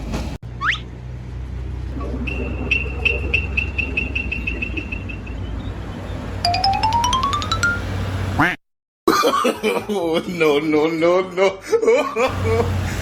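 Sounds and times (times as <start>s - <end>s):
vehicle engine humming: 0.0s - 8.4s, 12.3s - 13.0s
rising run of short notes: 6.4s - 8.1s.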